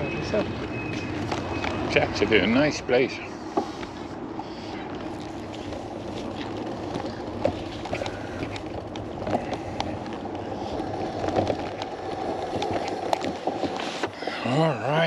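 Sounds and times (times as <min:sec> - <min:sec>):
bicycle tyre rumble: 0:00.0 - 0:15.0
bicycle clicks and rattles: 0:04.7 - 0:15.0.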